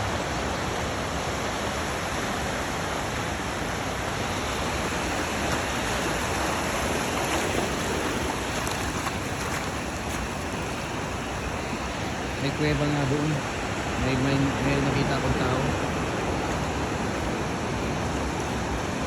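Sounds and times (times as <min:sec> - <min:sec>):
surf breaking on rocky shore: 0:00.0 - 0:19.0.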